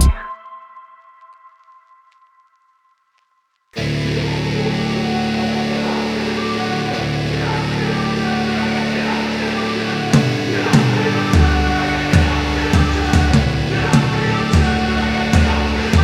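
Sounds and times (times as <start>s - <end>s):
bass guitar: 0.0s - 0.2s, 3.8s - 16.0s
drums: 0.0s - 0.3s, 10.1s - 16.0s
guitar chords: 3.8s - 16.0s.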